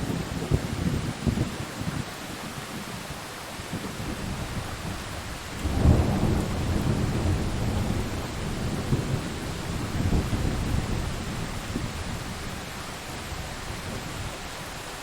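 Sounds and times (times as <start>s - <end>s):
heavy rain: 0.0s - 15.0s
thunder rumbling: 3.7s - 14.4s.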